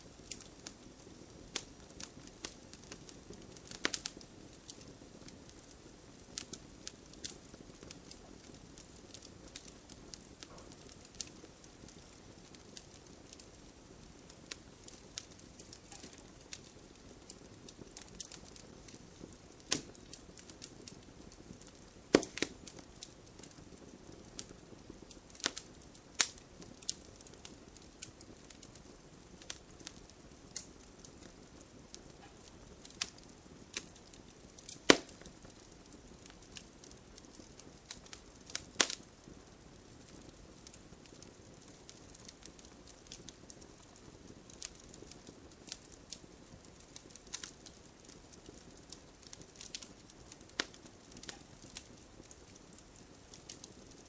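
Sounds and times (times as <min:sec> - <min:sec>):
bonfire crackling and popping: 0:00.0 - 0:54.0
soft hiss of rain: 0:00.0 - 0:54.0.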